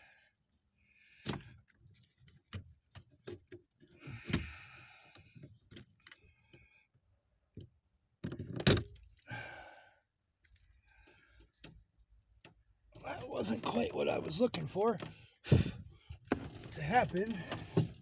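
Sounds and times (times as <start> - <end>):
rustling and scraping: 14.9 - 18.0.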